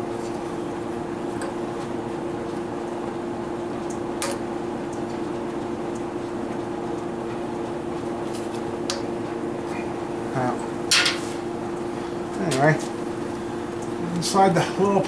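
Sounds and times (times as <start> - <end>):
mechanical hum: 0.0 - 15.0.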